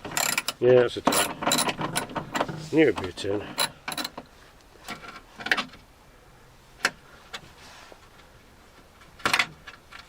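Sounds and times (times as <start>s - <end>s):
hand tools clicking on metal bolts: 0.0s - 2.6s, 3.5s - 4.2s.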